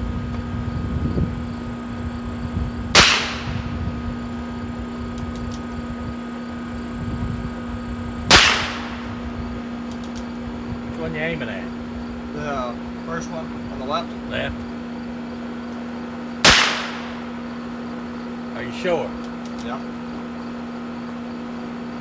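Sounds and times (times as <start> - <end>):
revolver shots: 2.9 - 3.7, 8.3 - 9.3, 16.4 - 17.5.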